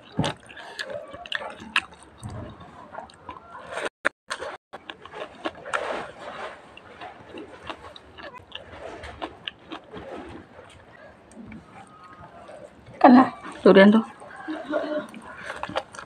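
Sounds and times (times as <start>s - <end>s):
person chewing with mouth clicks: 0.0s - 16.0s.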